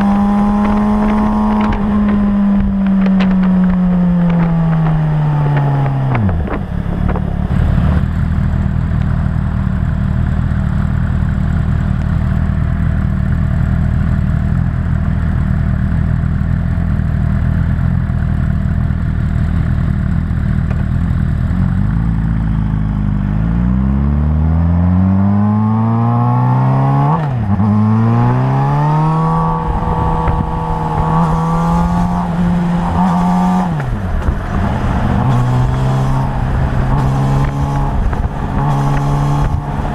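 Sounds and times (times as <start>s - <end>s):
motorcycle rattle: 0.0s - 8.9s
motorcycle engine idling and revving: 0.0s - 39.9s.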